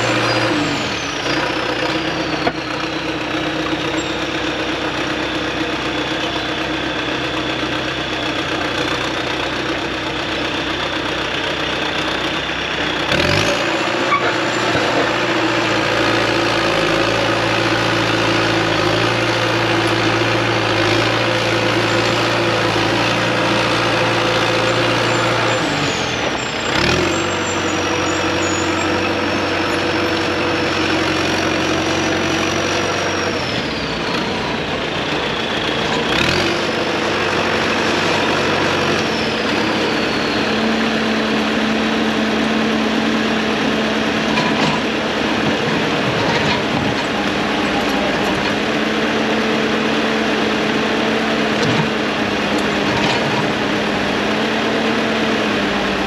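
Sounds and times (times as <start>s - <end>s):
excavator diesel engine running: 0.0s - 56.0s.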